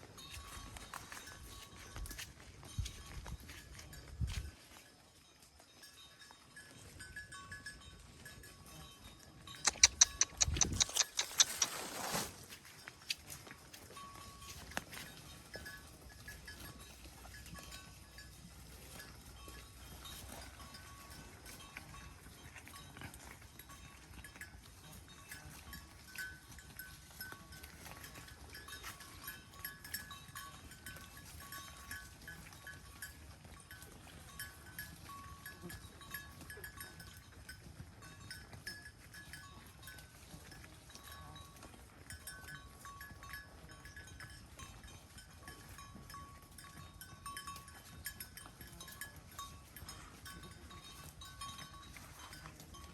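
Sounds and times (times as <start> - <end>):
cattle chewing hay: 9.6 - 35.4.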